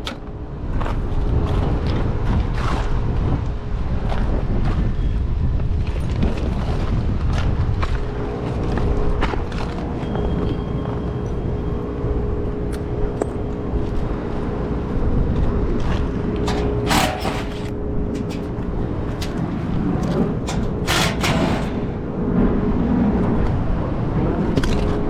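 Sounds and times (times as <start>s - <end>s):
hvac equipment humming: 7.0s - 24.4s.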